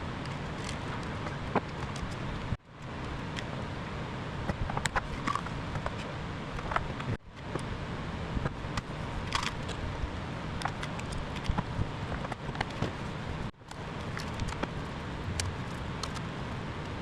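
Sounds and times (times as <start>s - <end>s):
small parts and tools clicking: 13.6s - 14.8s, 15.4s - 16.3s.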